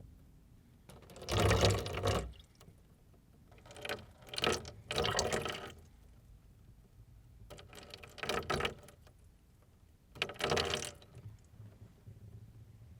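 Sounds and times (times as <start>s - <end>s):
water pouring: 1.1s - 2.6s, 3.7s - 5.8s.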